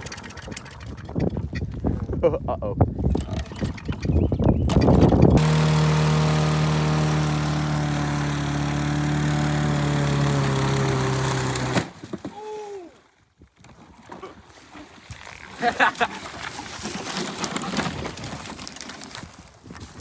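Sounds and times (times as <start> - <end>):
lawn mower engine running: 0.0 - 1.1, 4.7 - 12.0.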